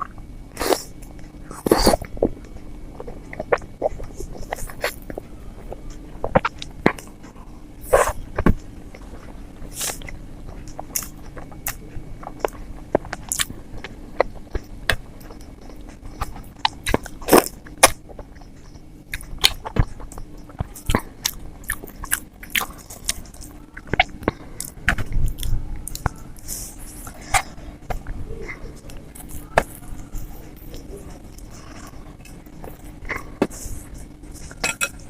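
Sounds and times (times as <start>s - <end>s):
steady low hum: 0.0s - 35.0s
wet chewing and lip smacks: 8.0s - 28.2s.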